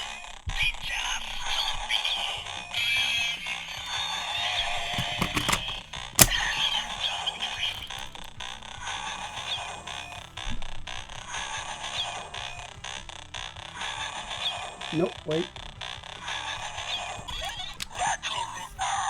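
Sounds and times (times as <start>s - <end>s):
toy belt synthesized music: 1.5s - 19.0s
plastic clicks: 3.4s - 8.6s, 17.2s - 18.8s
sharp plastic snap: 4.8s - 7.0s.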